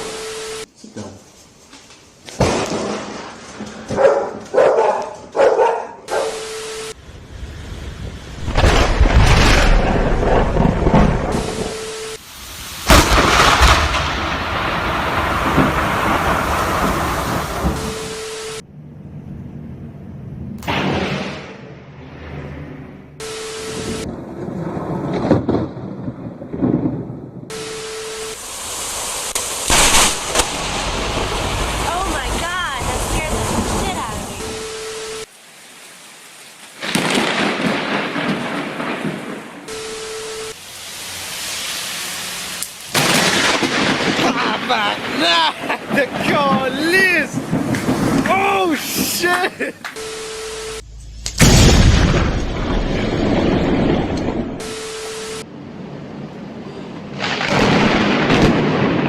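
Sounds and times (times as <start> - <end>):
dog barking: 3.9 - 6.4
heavy rain: 6.3 - 18.7, 23.2 - 50.8, 51.4 - 59.0
thunder crack: 7.1 - 11.8, 12.7 - 18.2, 18.8 - 22.8, 23.8 - 27.6, 28.3 - 34.6, 36.8 - 39.7, 42.9 - 49.9, 50.8 - 54.7, 57.1 - 59.0.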